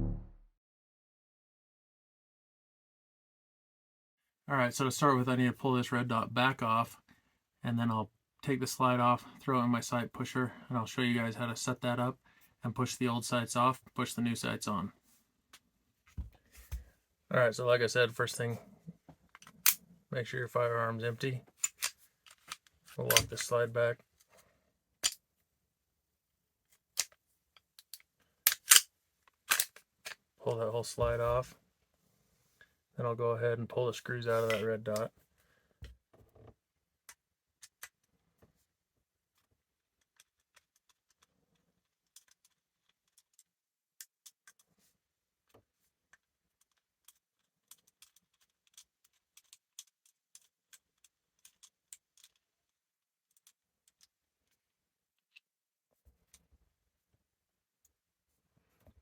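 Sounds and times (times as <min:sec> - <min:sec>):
pistol metallic clicks and clacks: 0:27.8 - 0:28.9, 0:29.5 - 0:29.8
small metallic clicks and taps: 0:45.5 - 0:52.4.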